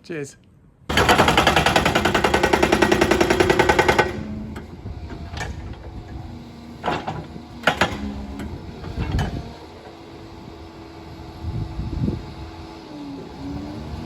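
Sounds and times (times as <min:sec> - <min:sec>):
hydraulic breaker hammering concrete: 0:00.9 - 0:09.9
machine hum: 0:00.9 - 0:14.0.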